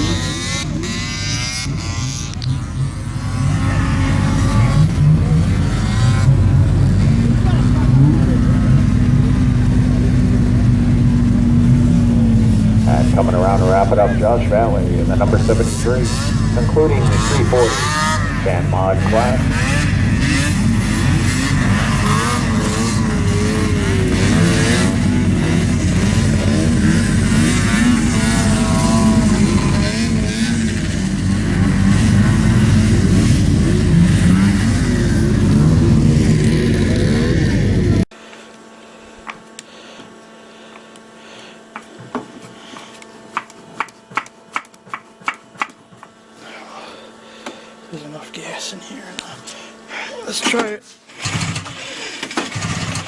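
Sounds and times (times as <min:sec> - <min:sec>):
snowmobile engines revving: 0:00.0 - 0:38.2.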